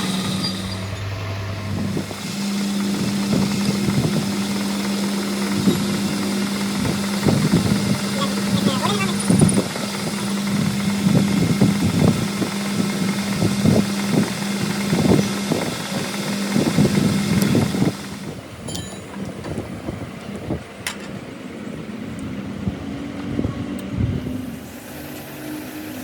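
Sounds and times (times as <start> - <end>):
engine humming: 0.0 - 26.0.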